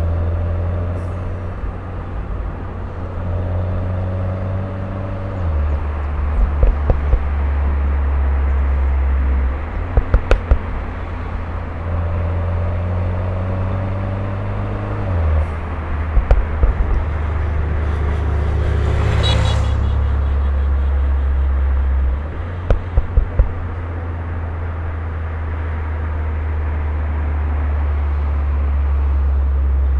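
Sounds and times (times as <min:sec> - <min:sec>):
car engine accelerating through gears: 0:00.0 - 0:29.6
exhaust pops: 0:05.4 - 0:11.2, 0:15.1 - 0:24.2.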